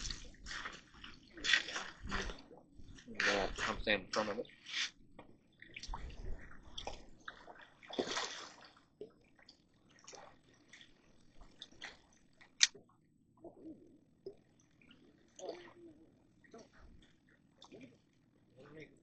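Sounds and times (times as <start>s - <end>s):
water splashing: 0.0s - 4.8s, 5.7s - 8.8s.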